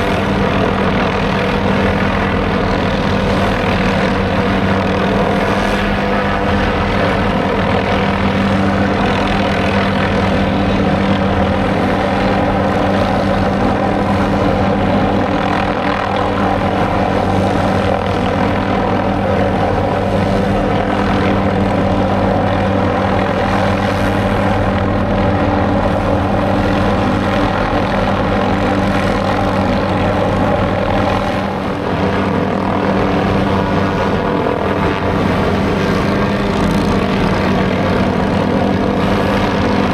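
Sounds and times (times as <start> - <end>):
helicopter drone overhead: 0.0 - 39.9.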